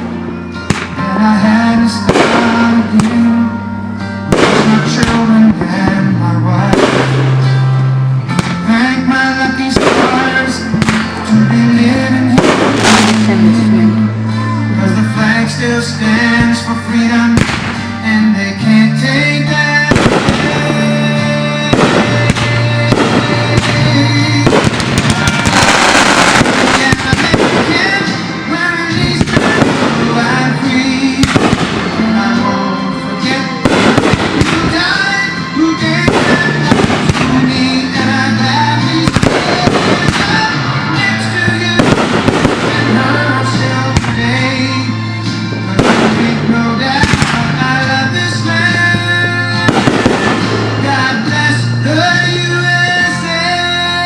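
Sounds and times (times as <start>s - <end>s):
fireworks bursting and crackling: 0.0s - 1.0s, 2.0s - 3.3s, 4.3s - 7.6s, 8.3s - 13.9s, 17.4s - 17.9s, 19.9s - 32.4s, 33.5s - 44.6s, 45.8s - 48.0s, 48.6s - 51.8s
loud recorded music: 0.0s - 54.0s.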